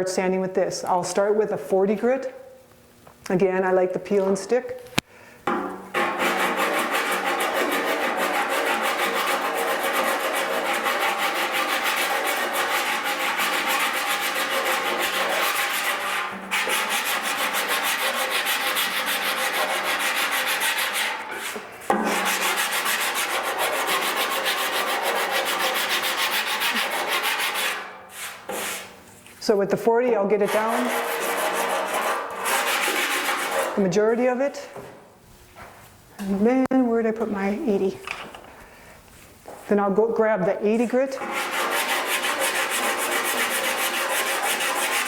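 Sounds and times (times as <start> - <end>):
sanding body filler: 6.0 - 29.0, 30.4 - 33.8, 41.2 - 45.0.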